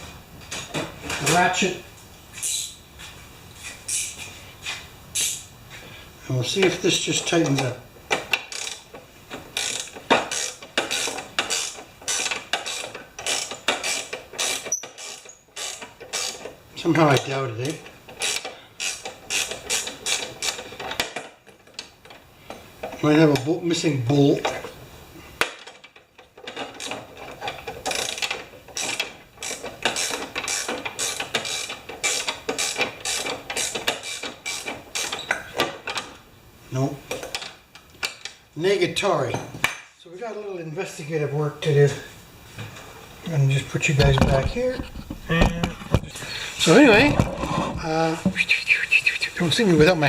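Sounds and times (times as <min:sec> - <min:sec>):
ratchet wrench clicking: 0:07.2 - 0:08.9, 0:09.6 - 0:16.5, 0:17.6 - 0:21.3, 0:26.5 - 0:35.4.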